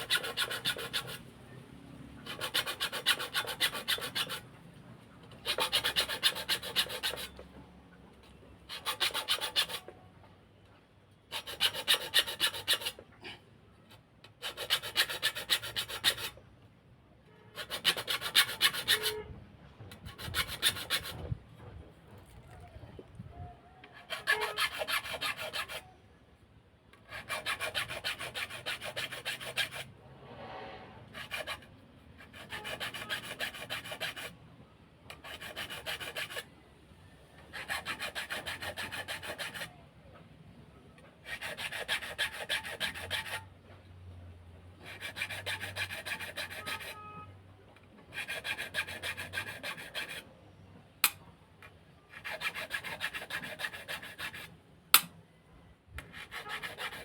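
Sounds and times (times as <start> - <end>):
hand tool scraping wood: 0.0 - 1.2, 2.2 - 4.5, 5.3 - 7.4, 8.7 - 10.0, 11.3 - 13.4, 14.3 - 16.4, 17.6 - 19.3, 19.9 - 22.7, 23.9 - 25.9, 27.1 - 34.3, 35.1 - 36.5, 37.5 - 39.8, 41.2 - 43.5, 44.8 - 47.0, 48.0 - 50.2, 52.1 - 55.1, 56.0 - 57.0.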